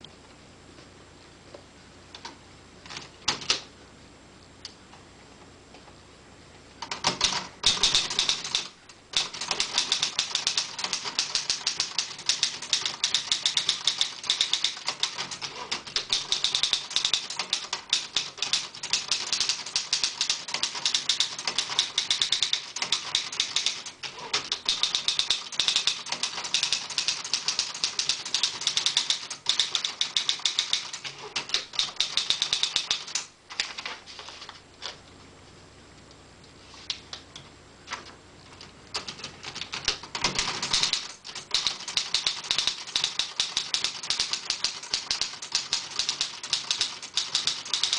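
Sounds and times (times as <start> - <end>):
manual typewriter typing: 2.9 - 3.6, 6.8 - 34.0, 38.9 - 47.9.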